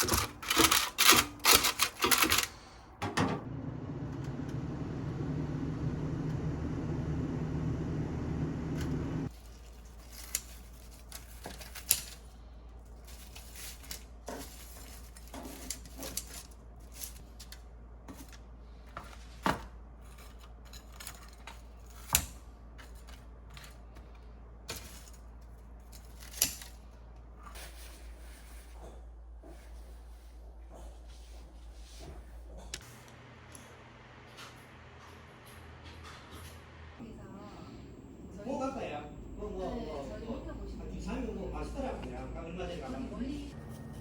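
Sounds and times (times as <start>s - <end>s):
low steady hum: 2.4s - 11.4s, 32.0s - 44.0s.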